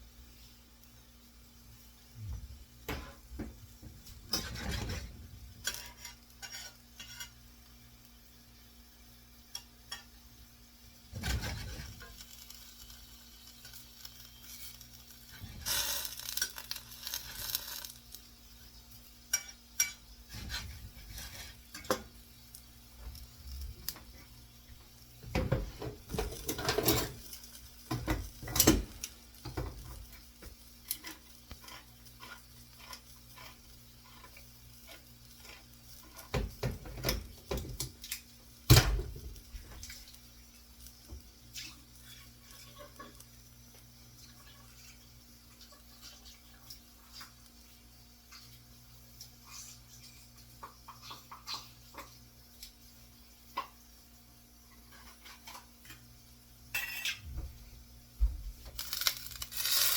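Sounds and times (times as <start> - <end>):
faint sizzle: 0.0 - 59.9
utensil scraping frying pan: 4.1 - 7.5, 11.1 - 18.2, 19.0 - 24.4, 25.2 - 40.2, 41.5 - 43.4, 54.6 - 56.1, 56.7 - 57.3, 58.8 - 59.9.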